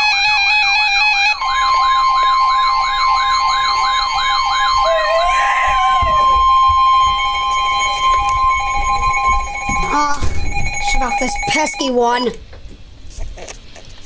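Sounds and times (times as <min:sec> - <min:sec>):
warbling siren-like tone: 0:00.0 - 0:12.0
steady alert tone: 0:01.4 - 0:12.1.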